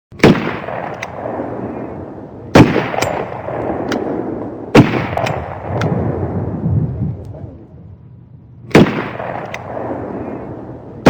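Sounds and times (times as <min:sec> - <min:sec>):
rifle shots with echo: 0:00.1 - 0:06.5, 0:08.7 - 0:11.0.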